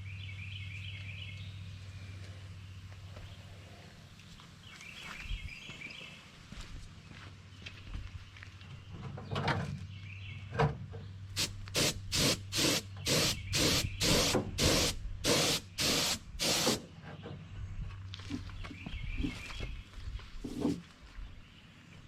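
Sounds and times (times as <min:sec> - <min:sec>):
spray gun hissing bursts: 0:11.4 - 0:16.9.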